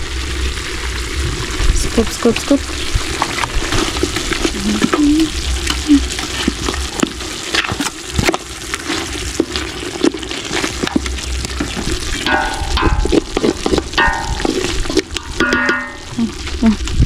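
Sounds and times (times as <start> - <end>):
stew sizzling: 0.0 - 17.0
spoon scraping a pot: 2.3 - 9.1.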